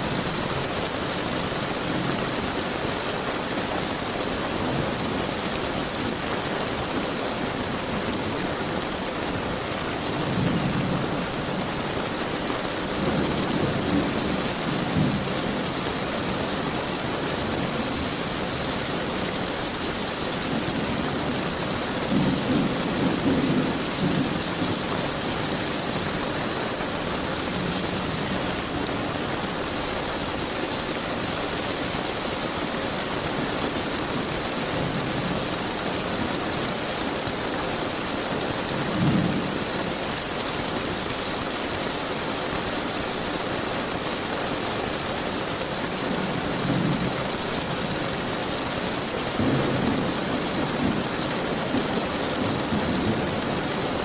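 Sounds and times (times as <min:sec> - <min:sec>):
steady rain: 0:00.0 - 0:54.0.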